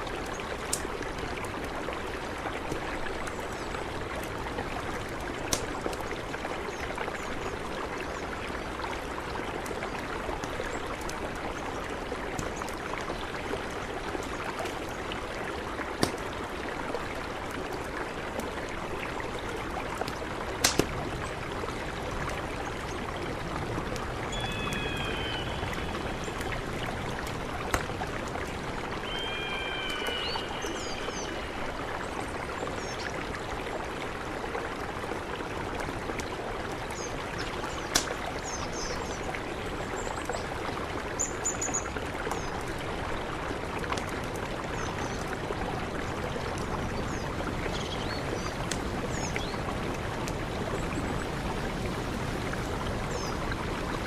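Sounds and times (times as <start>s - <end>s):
sharp clicks of water: 0.0s - 51.2s
short whistled calls: 29.0s - 31.4s.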